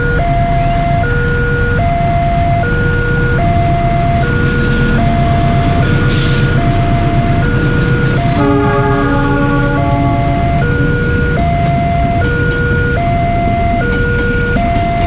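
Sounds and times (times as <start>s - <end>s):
low train rumble: 0.0s - 15.0s
two-tone level crossing alarm: 0.0s - 15.0s
multi-note train horn: 4.2s - 13.8s.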